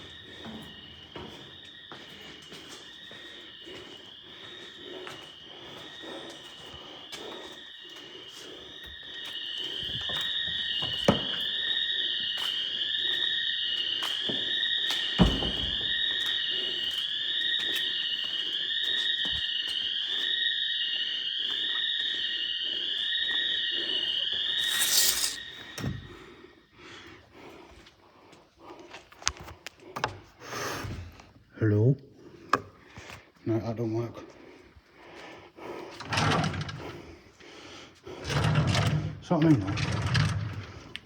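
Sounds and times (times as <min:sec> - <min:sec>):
electronic alarm siren: 0:00.0 - 0:26.4.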